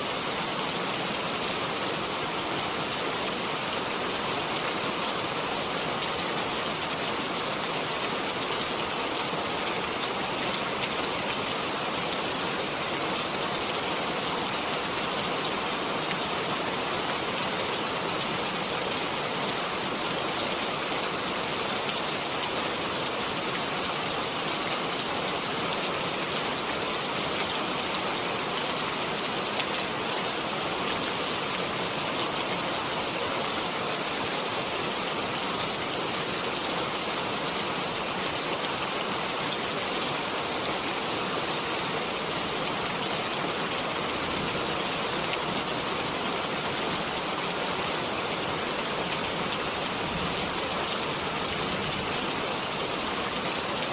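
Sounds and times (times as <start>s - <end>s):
steady rain falling: 0.0s - 53.9s.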